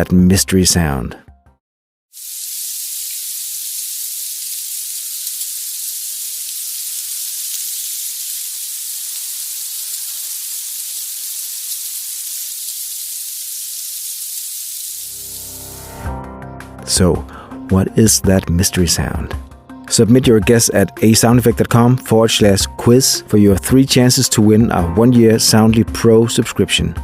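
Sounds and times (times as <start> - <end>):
steady high hiss: 2.2 - 16.0.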